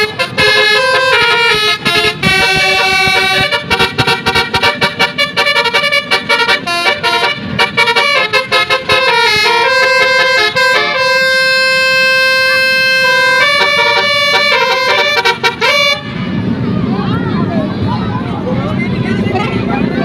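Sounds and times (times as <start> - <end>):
musical air horn tooting: 0.0 - 16.3.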